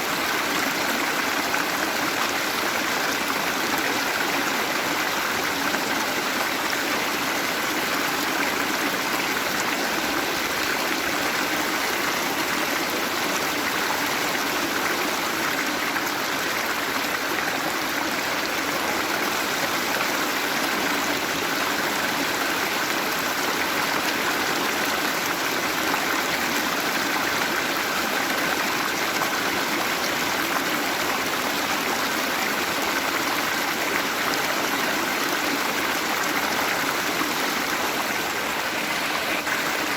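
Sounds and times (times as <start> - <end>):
waterfall rushing: 25.8 - 39.9.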